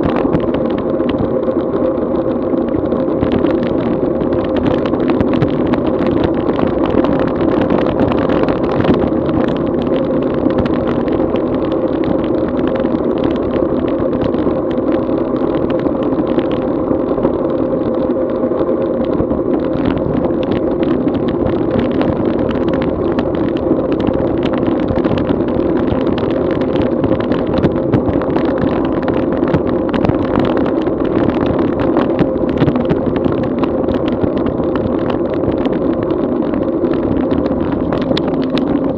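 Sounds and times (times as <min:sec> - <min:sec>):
road noise drone: 0:00.0 - 0:38.9
wind rush on microphone: 0:00.0 - 0:38.9
small knocks from road vibration: 0:19.0 - 0:38.9.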